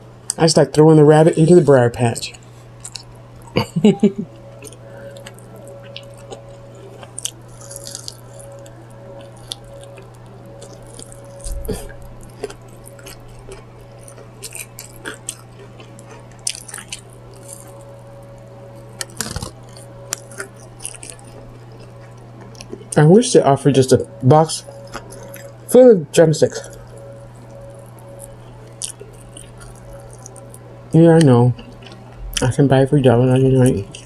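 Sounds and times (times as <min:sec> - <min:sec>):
low hum: 0:00.0 - 0:34.0
person chewing fried chicken: 0:02.4 - 0:23.0, 0:24.5 - 0:25.7, 0:26.6 - 0:30.6, 0:31.2 - 0:32.5.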